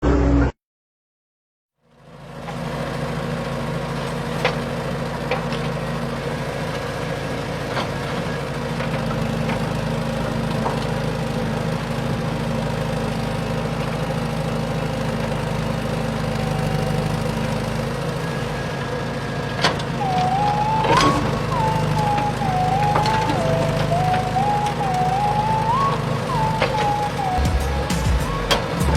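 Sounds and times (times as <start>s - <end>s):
heavy equipment engine drone: 1.9s - 28.9s
higher wavering whine: 19.8s - 28.9s.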